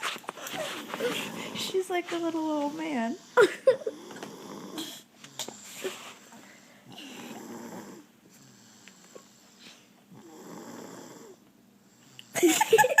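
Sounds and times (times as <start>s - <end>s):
soft snoring: 0.8s - 1.8s, 2.8s - 12.4s
quiet breathing: 4.1s - 12.3s.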